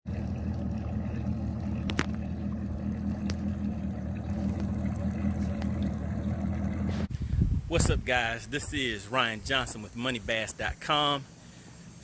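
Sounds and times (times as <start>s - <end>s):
engine humming steadily: 0.1s - 7.1s.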